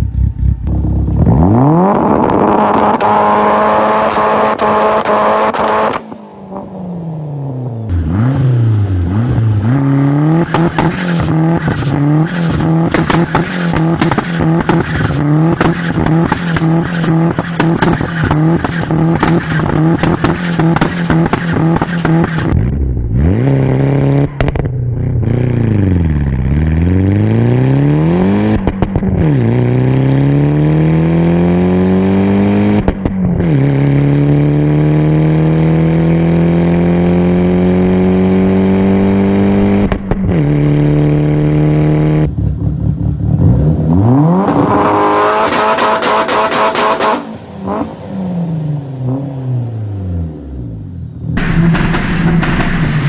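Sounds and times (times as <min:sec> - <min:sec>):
car engine accelerating hard: 0:00.0 - 0:53.0
exhaust crack at gear changes: 0:10.4 - 0:23.2, 0:24.2 - 0:26.1, 0:28.5 - 0:29.2, 0:39.6 - 0:40.6, 0:51.4 - 0:53.0.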